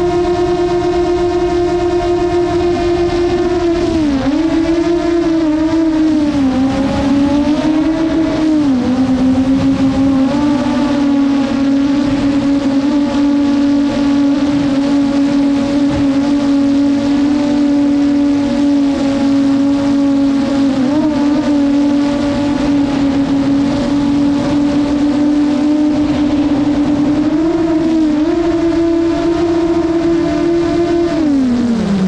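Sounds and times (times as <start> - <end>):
drone propellers whining: 0.0 - 32.0.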